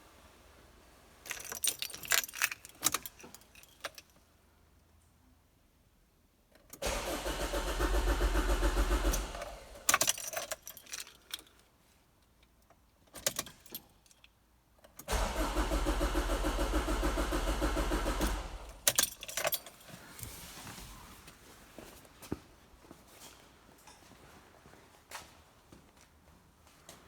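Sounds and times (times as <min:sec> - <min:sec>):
ignition keys jangling: 0:01.2 - 0:04.2, 0:06.5 - 0:11.7, 0:12.4 - 0:20.3
starter motor cranking engine: 0:06.8 - 0:09.9, 0:15.1 - 0:19.0.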